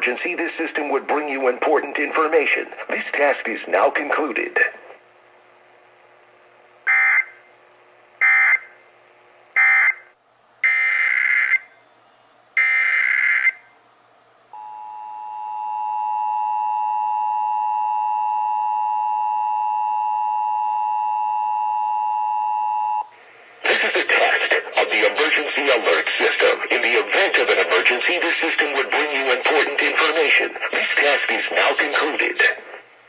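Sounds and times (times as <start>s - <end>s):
steady two-tone attention signal: 14.6s - 23.0s.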